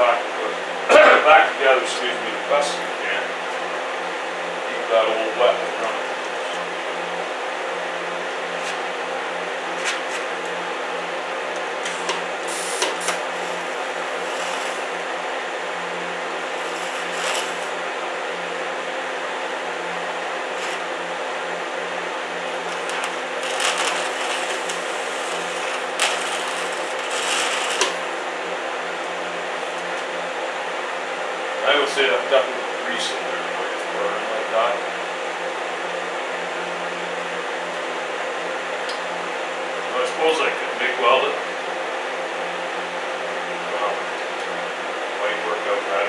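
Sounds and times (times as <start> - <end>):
welder hum: 4.7 - 28.7
welding sizzling hiss: 11.6 - 15.6, 16.4 - 17.8, 19.4 - 20.9, 22.5 - 28.3
sharp pops of burning grease: 11.9 - 15.1, 22.6 - 28.1.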